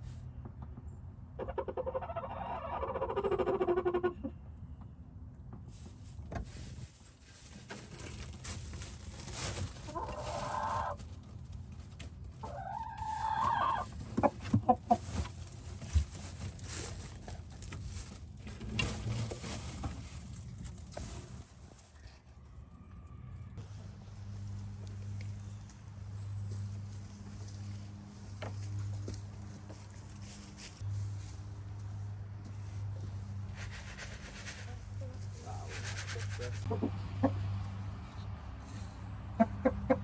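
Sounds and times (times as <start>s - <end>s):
rustling: 5.7s - 12.1s, 14.7s - 22.2s.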